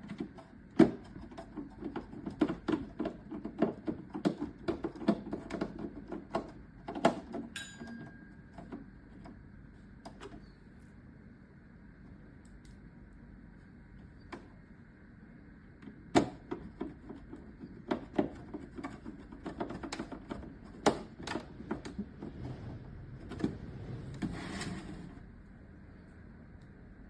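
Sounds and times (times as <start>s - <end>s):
plastic parts clicking and knocking: 0.0s - 9.3s, 15.8s - 22.4s.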